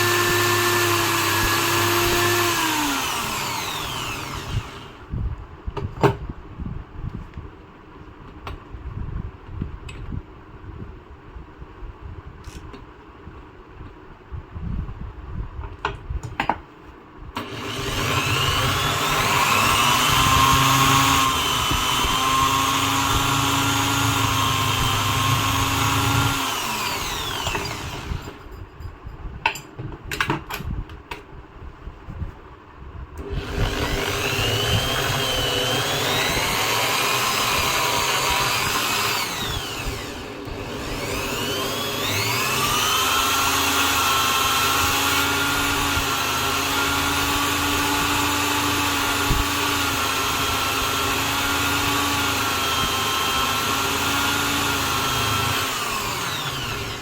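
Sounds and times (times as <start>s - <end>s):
electric drill motor running: 0.0s - 5.1s, 17.4s - 28.5s, 33.2s - 57.0s.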